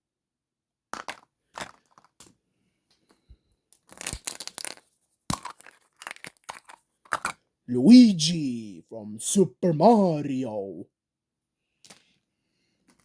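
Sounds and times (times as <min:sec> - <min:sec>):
plastic packaging crinkling: 0:03.8 - 0:07.3.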